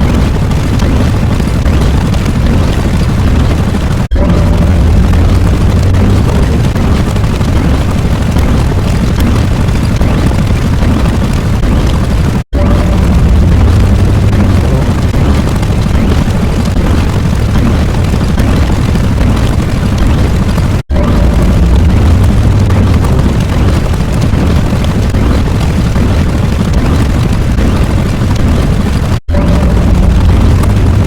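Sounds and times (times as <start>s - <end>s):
bass-heavy rumbling: 0.0s - 31.0s.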